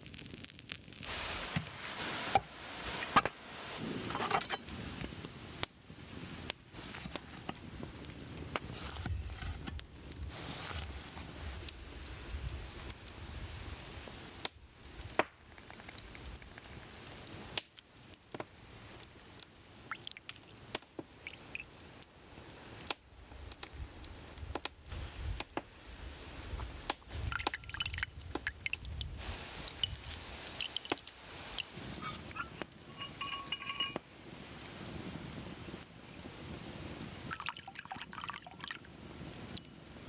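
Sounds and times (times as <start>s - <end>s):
small liquid sounds: 14.8s - 34.0s, 37.2s - 40.0s
kitchen tools tapping and knocking: 32.0s - 34.0s
ringing clink of glass: 32.0s - 34.0s.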